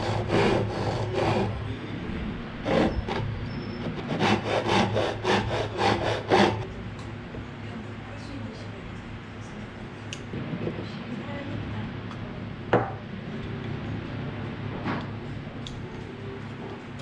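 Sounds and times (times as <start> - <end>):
hand saw cutting wood: 0.0 - 1.6, 2.6 - 6.7.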